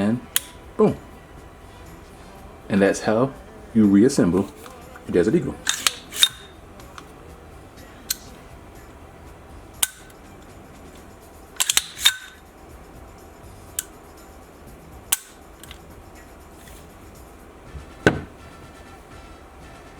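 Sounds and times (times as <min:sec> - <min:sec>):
pistol metallic clicks and clacks: 0:00.4 - 0:00.6, 0:05.7 - 0:06.6, 0:09.8 - 0:10.2, 0:11.6 - 0:12.4, 0:15.1 - 0:15.8.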